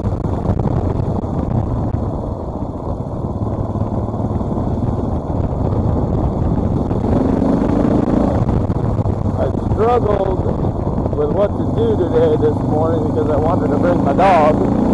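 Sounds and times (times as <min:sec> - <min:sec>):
motorcycle engine rumbling: 0:00.0 - 0:14.9.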